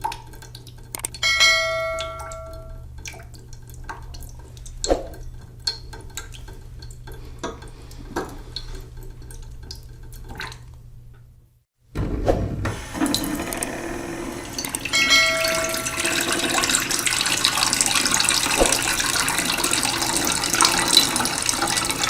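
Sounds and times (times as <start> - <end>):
dripping water: 0.0 - 11.2, 13.0 - 22.0
ringing tone: 1.2 - 2.8, 14.9 - 16.4.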